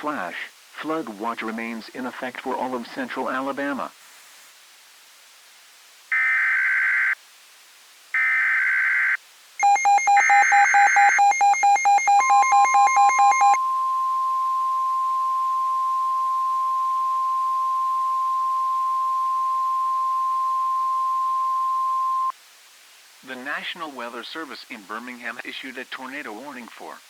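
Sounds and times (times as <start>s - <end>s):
screechy data tones: 8.2s - 22.3s
rapid beeping: 9.6s - 22.3s
steady alarm tone: 9.6s - 22.3s.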